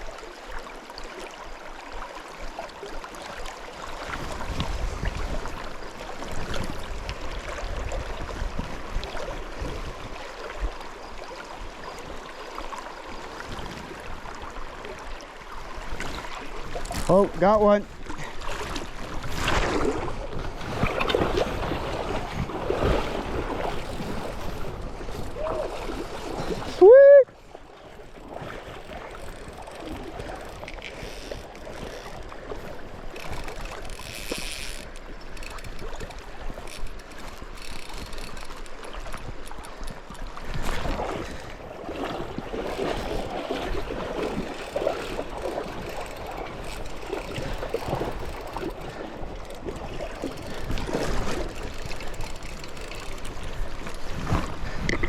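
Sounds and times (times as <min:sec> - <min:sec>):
river water rushing and gurgling: 0:00.0 - 0:55.0
water splashing: 0:13.4 - 0:55.0.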